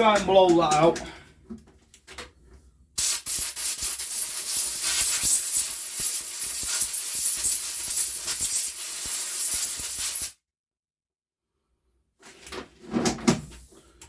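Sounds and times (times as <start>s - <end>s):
compressed air hissing: 3.0s - 10.4s.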